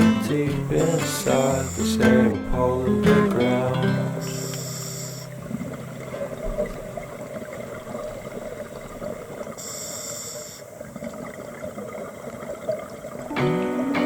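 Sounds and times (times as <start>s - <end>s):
regulator bubbling underwater: 0.0s - 9.7s
hissing inhale through regulator: 4.1s - 5.4s, 9.6s - 10.7s.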